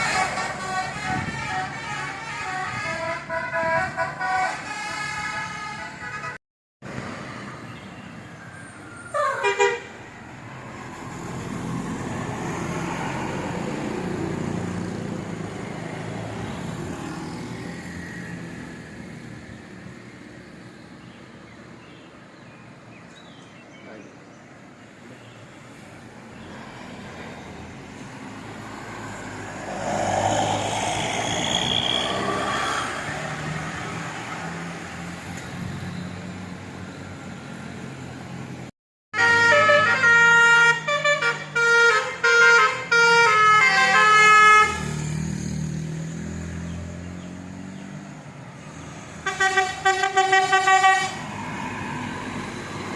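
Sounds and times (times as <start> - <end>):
multi-tone bus horn: 0.0 - 6.4, 9.1 - 10.0, 39.1 - 45.1, 49.2 - 51.4
vehicle approaching: 6.9 - 21.4, 25.7 - 38.7, 40.8 - 52.9.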